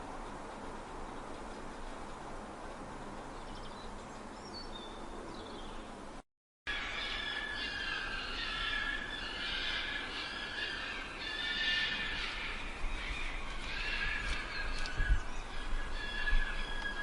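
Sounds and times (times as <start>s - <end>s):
outdoor background noise: 0.0s - 17.0s
high-pitched animal calls: 6.7s - 14.9s.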